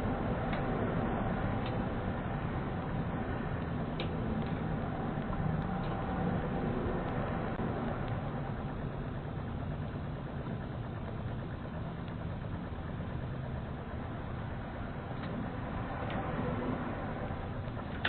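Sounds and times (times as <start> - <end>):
low rumble and hiss: 0.0 - 18.0.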